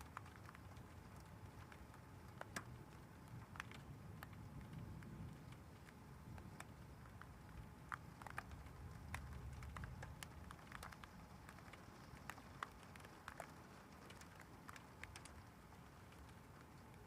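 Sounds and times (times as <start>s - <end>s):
raindrops pattering: 0.0s - 17.0s
low thunder rumble: 3.3s - 11.2s.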